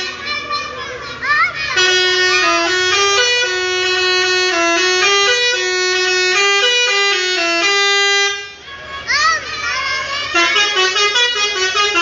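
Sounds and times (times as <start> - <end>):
musical air horn playing a tune: 1.8 - 8.6, 10.3 - 12.0.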